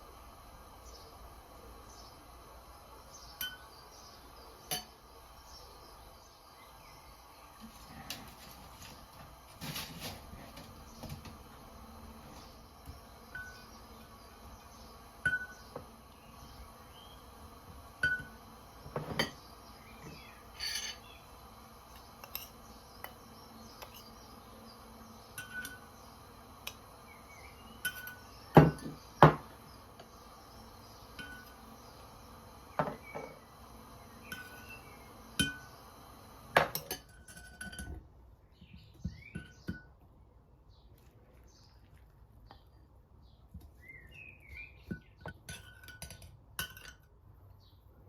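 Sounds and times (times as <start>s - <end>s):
dishes and utensils clinking: 20.5s - 21.1s, 27.8s - 29.4s, 36.6s - 38.0s, 45.0s - 47.1s.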